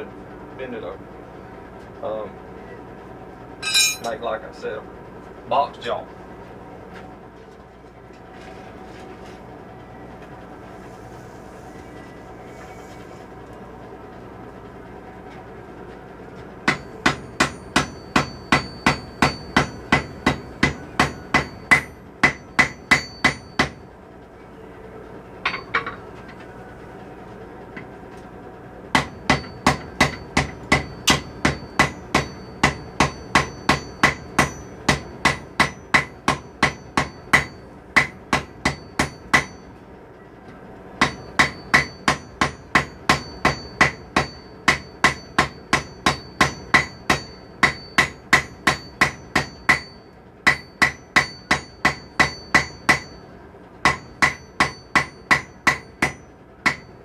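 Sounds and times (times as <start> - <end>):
hammer striking steel on anvil: 3.6 - 4.2, 16.6 - 23.8, 29.0 - 39.7, 41.0 - 53.2, 53.8 - 57.0.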